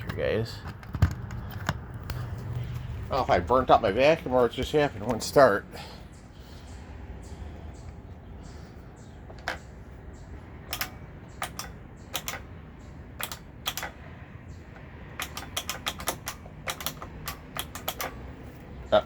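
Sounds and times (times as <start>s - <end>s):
vacuum cleaner clicks and taps: 14.8s - 18.2s.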